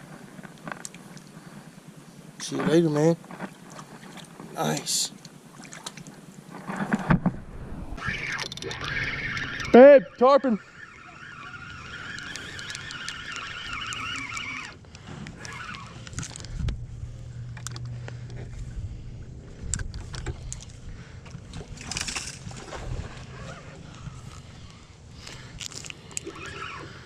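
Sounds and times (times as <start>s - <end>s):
low rumble: 7.0s - 10.8s, 14.8s - 25.6s
wavering buzz: 7.2s - 25.0s
fishing reel handling noise: 8.0s - 10.3s, 10.9s - 16.7s.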